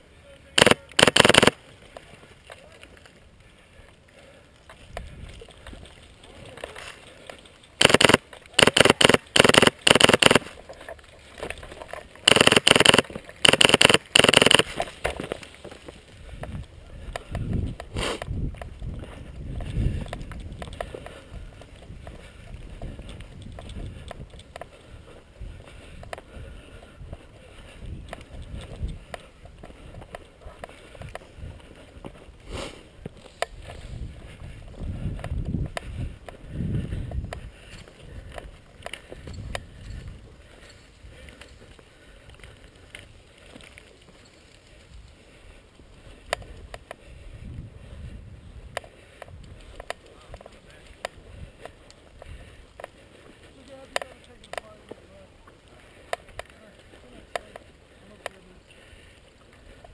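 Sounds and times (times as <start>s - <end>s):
airsoft rifle full-auto bursts: 0.6s - 1.6s, 7.8s - 10.5s, 12.2s - 14.8s
sharp clicks: 0.6s - 1.6s, 6.6s - 10.6s, 11.4s - 15.4s
wind rumbling on microphone: 4.8s - 6.6s, 15.9s - 53.1s.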